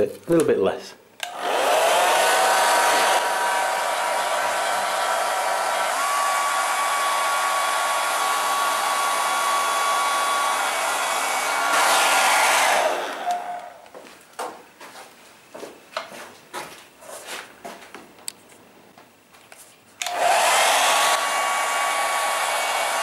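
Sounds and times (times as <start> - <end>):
hairdryer blowing: 1.2 - 14.0, 20.0 - 23.0.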